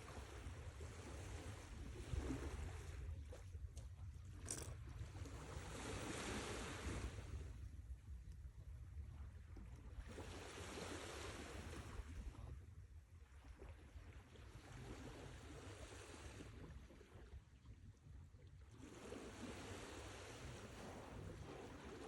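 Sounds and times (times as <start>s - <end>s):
sea waves washing ashore: 5.4s - 7.5s, 10.0s - 12.2s, 18.8s - 22.0s.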